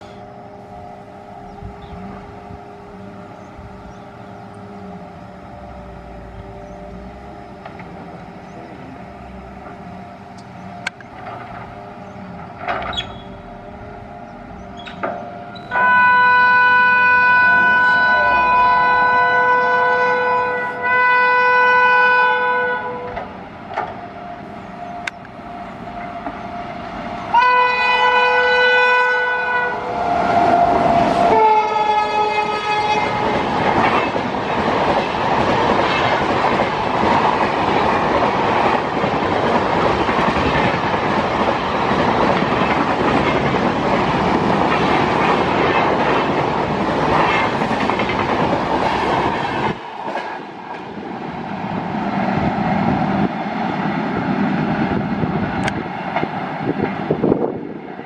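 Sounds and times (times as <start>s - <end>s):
locomotive horn: 0.0s - 23.3s, 24.0s - 34.2s
train running: 0.0s - 58.0s.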